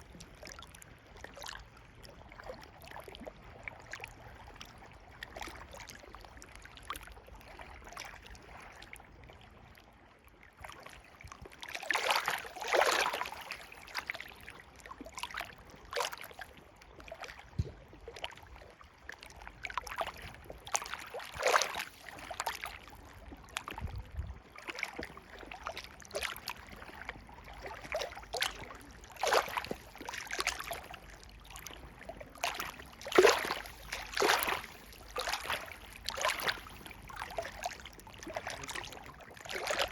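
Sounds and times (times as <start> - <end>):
river water flowing: 10.6 - 17.5, 18.2 - 23.8, 24.4 - 39.9
water splashing: 11.7 - 23.9, 24.6 - 39.9.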